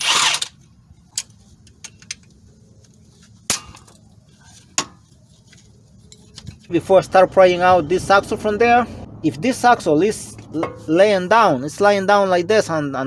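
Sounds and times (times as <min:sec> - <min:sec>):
metal tools clinking and knocking: 0:00.0 - 0:02.4, 0:03.5 - 0:06.8, 0:10.4 - 0:11.0.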